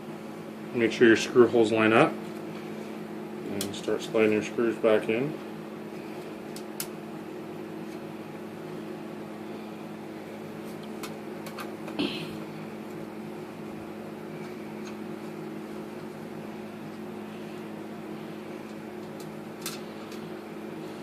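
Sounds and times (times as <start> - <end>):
low electrical hum: 0.0 - 21.0.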